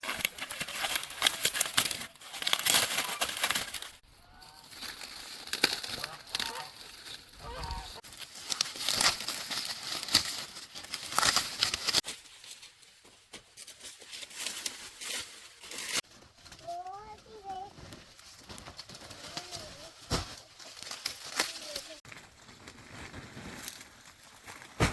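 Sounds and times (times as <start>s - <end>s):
dry plants rustling and tearing: 0.0s - 16.8s, 17.9s - 24.9s
fowl calls: 7.4s - 8.0s.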